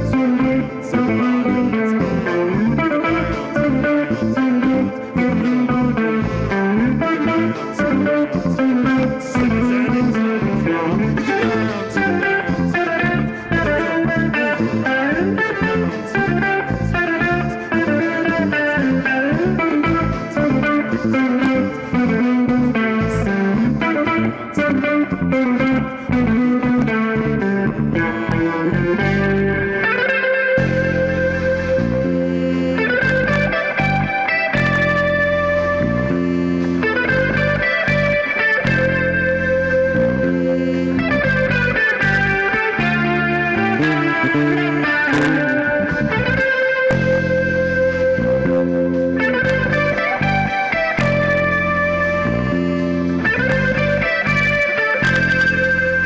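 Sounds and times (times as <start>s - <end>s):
band playing funk-jazz groove: 0.0s - 56.0s
bass: 0.0s - 56.0s
steady beat: 0.0s - 56.0s
twangy electric guitar: 0.0s - 56.0s.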